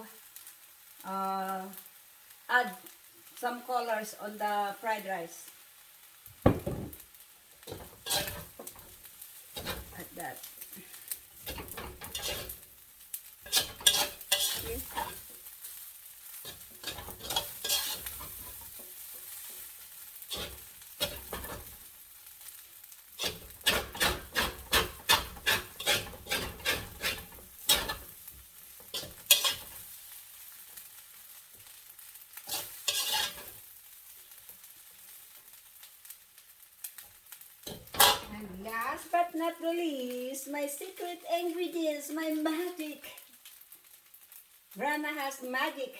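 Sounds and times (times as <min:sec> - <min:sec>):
rice sizzling: 0:00.0 - 0:45.9
spatula scraping a pan: 0:07.6 - 0:21.9, 0:23.1 - 0:30.0, 0:31.6 - 0:33.7, 0:37.6 - 0:38.5.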